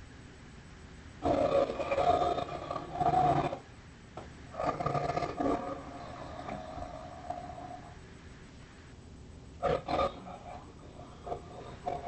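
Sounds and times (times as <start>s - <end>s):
tiger roaring: 1.2s - 3.7s, 4.5s - 8.0s, 9.6s - 12.0s.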